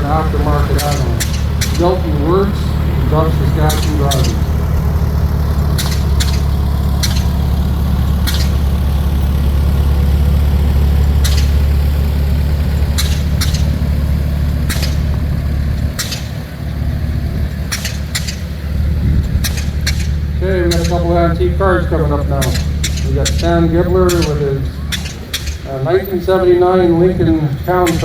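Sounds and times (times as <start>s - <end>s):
tractor engine rumbling: 0.0s - 28.0s
short sharp clicks: 5.7s - 7.5s, 8.2s - 8.6s, 11.2s - 11.7s, 12.9s - 13.8s, 16.0s - 16.4s, 17.7s - 18.5s, 19.3s - 21.2s, 22.3s - 25.7s.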